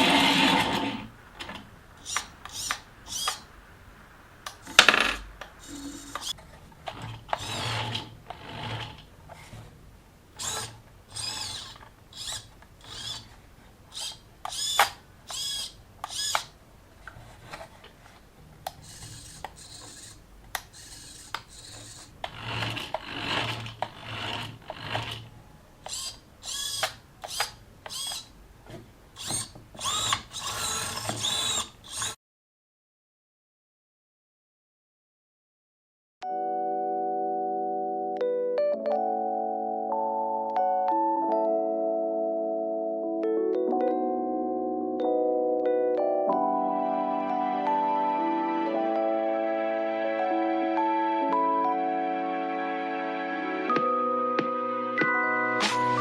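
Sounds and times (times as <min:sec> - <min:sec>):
small electric motor whirring: 0:02.0 - 0:03.5, 0:04.6 - 0:06.4, 0:07.3 - 0:09.1, 0:10.4 - 0:16.6, 0:18.8 - 0:28.3, 0:29.2 - 0:32.2.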